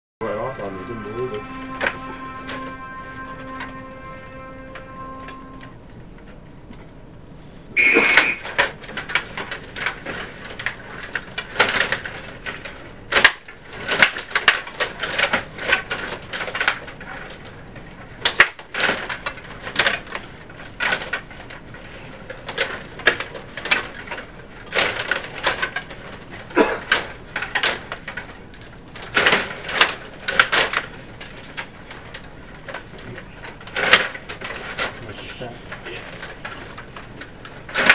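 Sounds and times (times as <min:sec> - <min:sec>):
short high tone: 0:00.2 - 0:06.1
table hockey clicking and clattering: 0:08.0 - 0:17.5, 0:22.2 - 0:35.0, 0:35.7 - 0:37.9.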